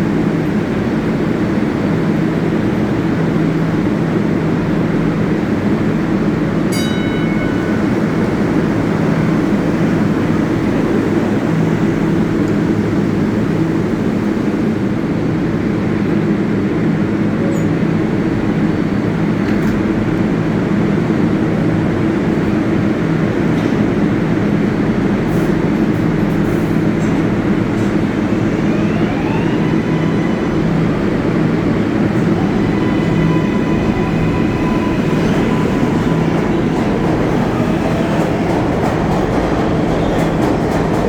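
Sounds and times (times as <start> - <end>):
subway train rumbling hum: 0.0 - 41.0.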